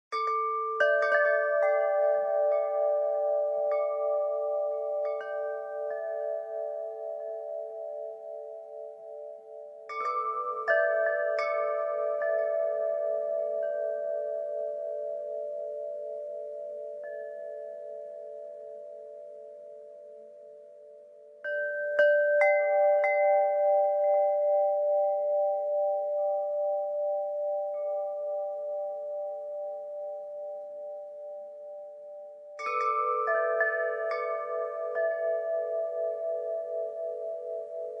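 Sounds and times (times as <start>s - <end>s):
wind chimes ringing: 0.1s - 38.0s.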